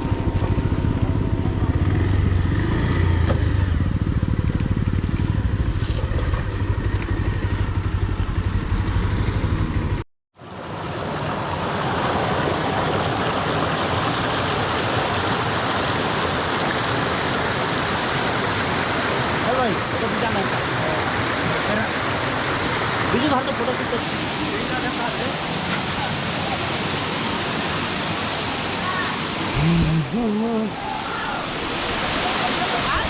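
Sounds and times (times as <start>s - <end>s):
vehicle engine rumbling: 0.0s - 10.0s, 29.4s - 31.0s
waterfall rushing water: 10.4s - 33.0s.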